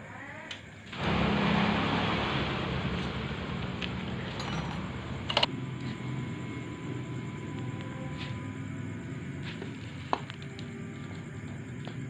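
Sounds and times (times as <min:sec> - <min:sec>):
motorcycle engine running: 0:01.0 - 0:07.3.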